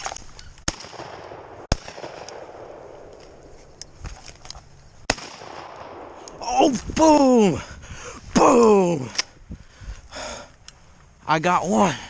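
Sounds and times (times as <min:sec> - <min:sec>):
shotgun shots: 0:00.7 - 0:03.2, 0:05.1 - 0:06.2.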